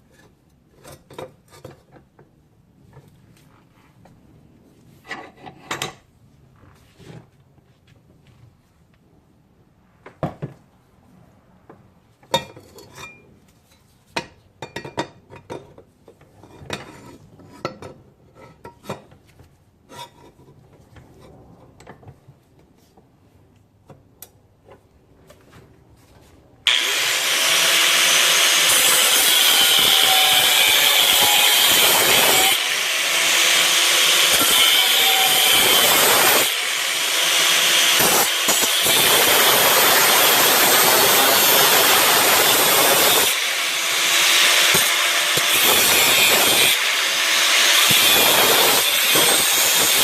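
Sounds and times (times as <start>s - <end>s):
cutoff wheel grinding metal: 26.7s - 50.0s.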